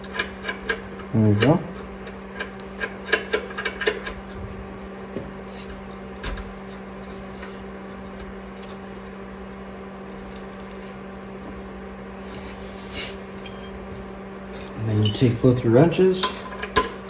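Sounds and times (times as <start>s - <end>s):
clicks and knocks of tools: 0.0s - 4.3s, 13.4s - 15.4s, 16.2s - 17.0s
steady low hum: 0.0s - 17.0s.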